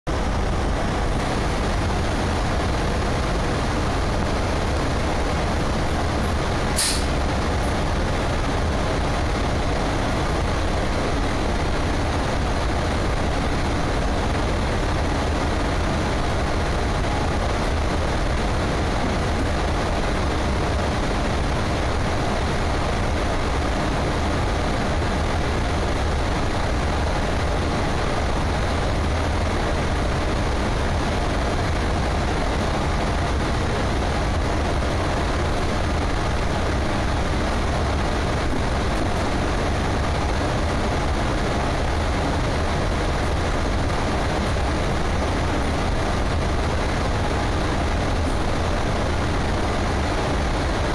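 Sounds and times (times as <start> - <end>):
train wheels rumbling on track: 0.1 - 50.9
brief sharp high-pitched sound: 6.8 - 7.2.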